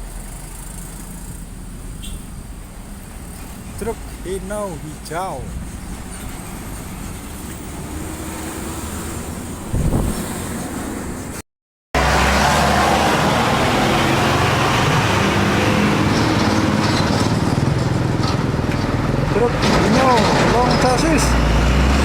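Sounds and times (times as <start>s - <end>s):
diesel truck engines: 0.0s - 11.4s, 12.0s - 22.0s.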